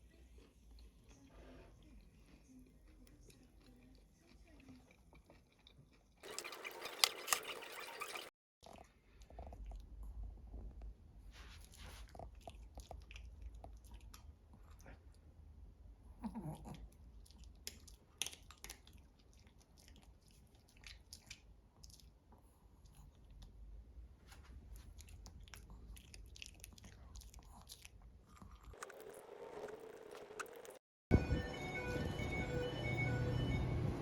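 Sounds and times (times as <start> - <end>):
crunchy chewing: 0.4 - 7.8, 24.4 - 30.8.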